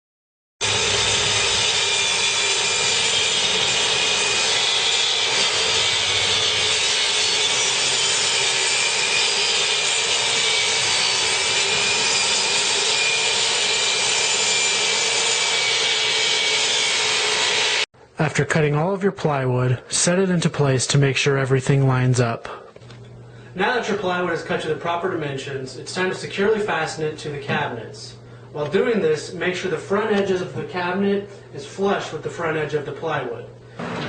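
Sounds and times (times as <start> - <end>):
power saw cutting plywood: 0.6 - 17.9.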